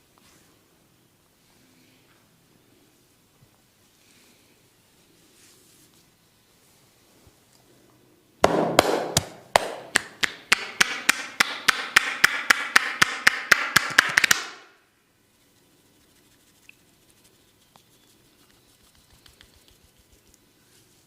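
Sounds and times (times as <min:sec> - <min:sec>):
hand strikes on head: 0:08.4 - 0:14.4.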